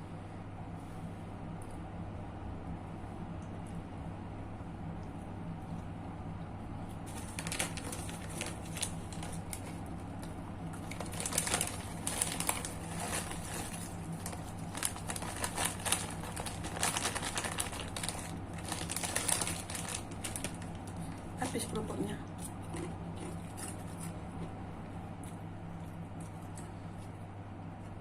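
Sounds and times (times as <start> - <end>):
steady low hum: 0.0 - 28.0
crisp crackers crunching: 7.0 - 21.4, 22.4 - 24.6.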